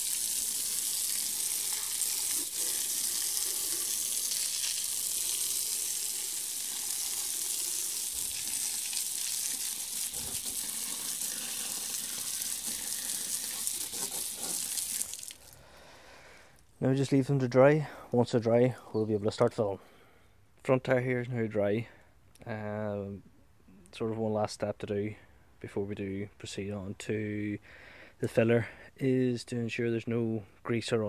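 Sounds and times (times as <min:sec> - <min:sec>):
power hose water jet hissing: 0:00.0 - 0:15.6.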